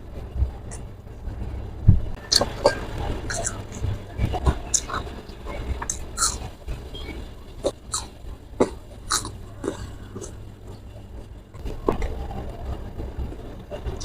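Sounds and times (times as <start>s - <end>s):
person chewing with wet smacks: 2.3s - 5.1s, 7.6s - 10.4s.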